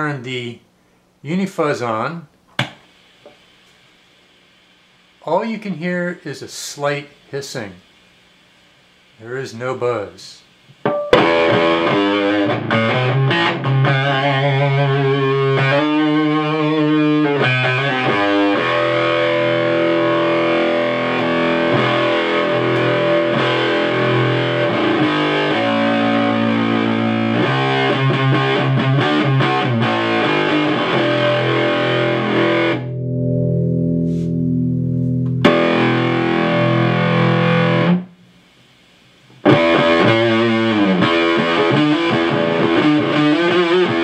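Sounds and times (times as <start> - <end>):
fuzz electric guitar: 10.8 - 38.1, 39.4 - 44.0.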